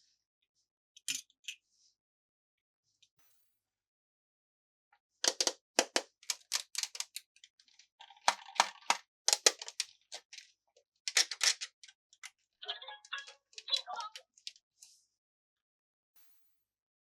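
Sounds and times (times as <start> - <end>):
plastic toy pieces clicking: 5.2 - 7.5, 8.1 - 10.5, 11.1 - 12.3.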